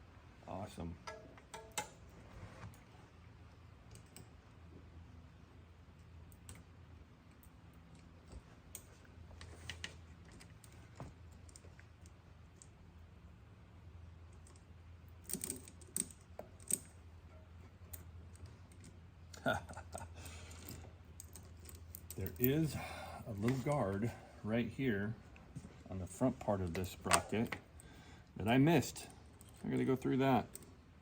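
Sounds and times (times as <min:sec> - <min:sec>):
faint low hum: 0:00.0 - 0:31.0.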